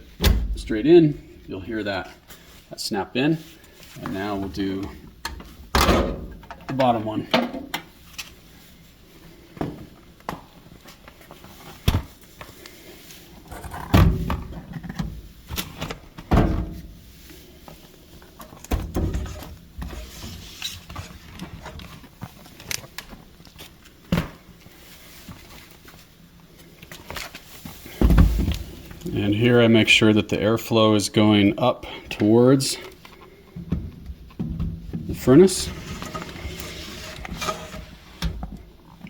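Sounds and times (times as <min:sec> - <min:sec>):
heavy thumps: 0:27.9 - 0:29.0.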